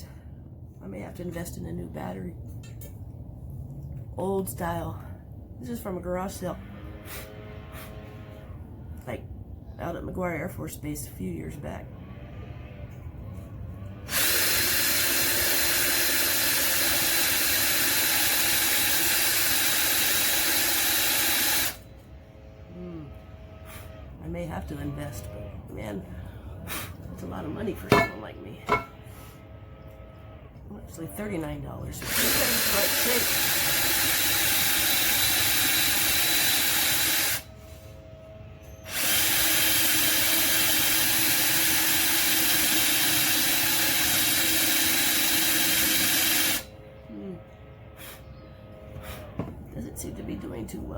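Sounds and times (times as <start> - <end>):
electric drill boring through tubing: 14.1 - 21.9, 32.0 - 37.5, 38.9 - 46.7.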